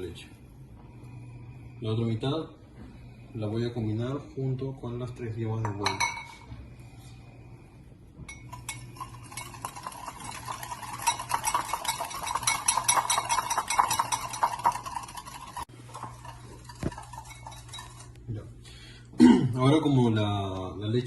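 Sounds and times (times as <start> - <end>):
whisk clicking against bowl: 8.4 - 18.2.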